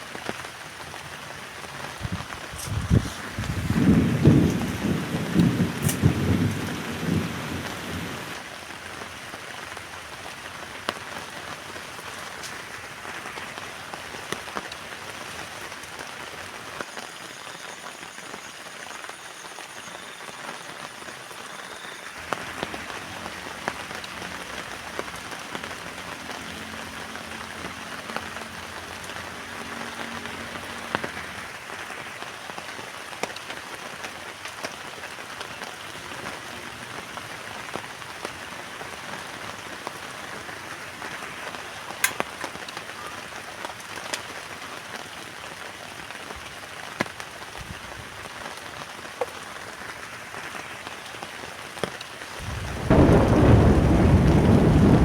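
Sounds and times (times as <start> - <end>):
rain falling on a tent: 0.0 - 55.0
low thunder rumble: 2.0 - 8.4, 52.4 - 55.0.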